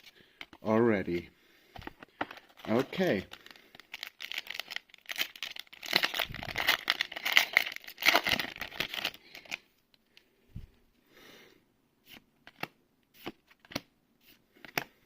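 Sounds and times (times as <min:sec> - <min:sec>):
foil wrapper tearing and crinkling: 0:02.7 - 0:09.6.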